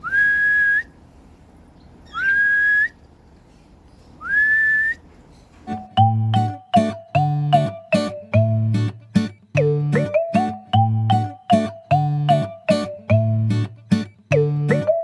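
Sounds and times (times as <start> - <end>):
person whistling: 0.0 - 0.9, 2.1 - 3.0, 4.2 - 5.0
guitar music: 5.7 - 15.0.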